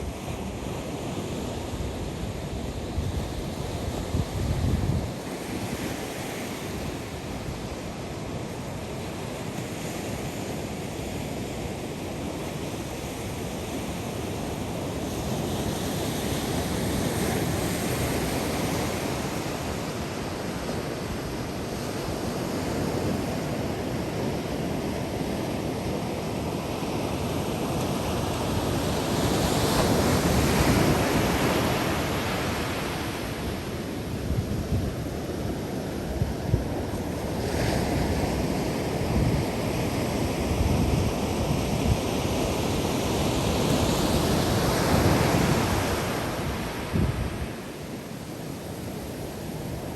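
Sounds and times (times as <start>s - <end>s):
ocean surf breaking on sand: 0.0s - 49.9s
wind buffeting microphone: 2.6s - 5.5s, 44.1s - 47.7s.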